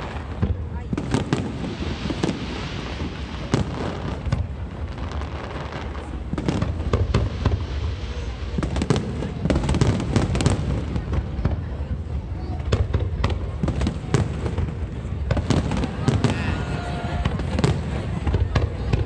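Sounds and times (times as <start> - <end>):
firework bangs and crackles: 0.0 - 19.0.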